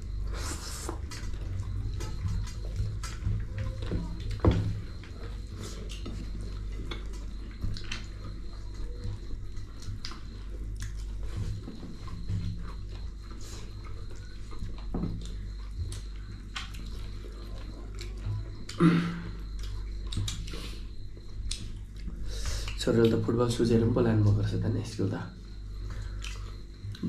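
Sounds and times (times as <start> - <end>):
person chewing food: 0.0 - 23.2, 25.5 - 27.0
steady low hum: 0.0 - 27.0
wet smacking clicks: 19.6 - 20.6.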